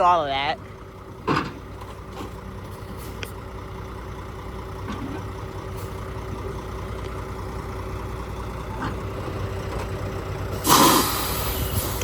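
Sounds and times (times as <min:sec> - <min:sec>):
heavy machine engine droning: 0:00.0 - 0:12.0.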